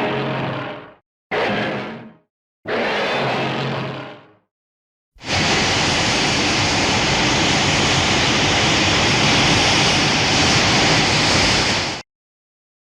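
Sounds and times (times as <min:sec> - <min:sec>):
steady rushing noise: 0:05.2 - 0:12.0.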